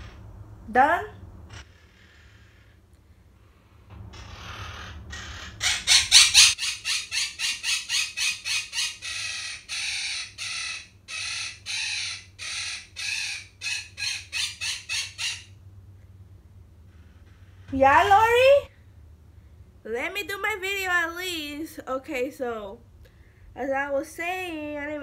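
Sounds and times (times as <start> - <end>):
parrot screeching: 4.1 - 15.6.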